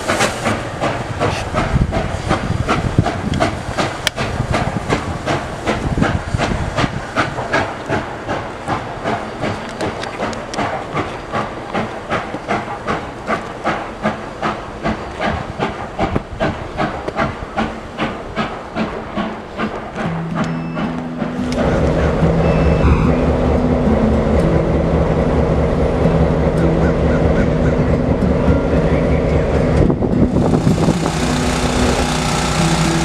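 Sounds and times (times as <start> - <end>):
steam hissing: 0.0 - 23.4, 30.2 - 33.0
steam locomotive exhaust chuffs: 0.0 - 33.0.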